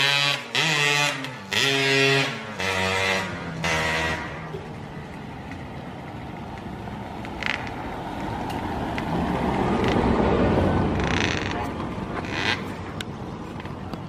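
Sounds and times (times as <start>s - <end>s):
motorcycle engine revving: 0.0s - 5.1s, 6.9s - 8.0s, 9.0s - 13.0s.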